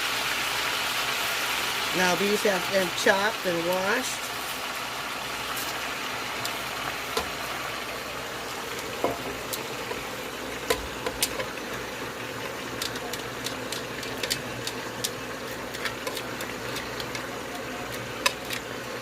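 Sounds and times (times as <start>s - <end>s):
greens frying in grease: 0.0s - 19.0s
sharp pops and crackles: 8.6s - 19.0s.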